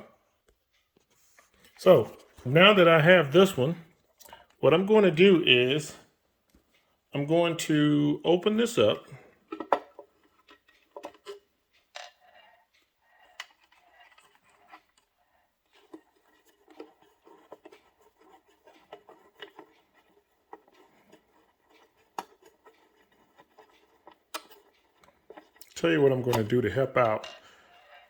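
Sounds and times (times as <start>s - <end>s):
small clicks taps and scrapes: 0.4s - 2.4s, 3.9s - 4.6s, 6.4s - 7.0s, 9.1s - 28.0s.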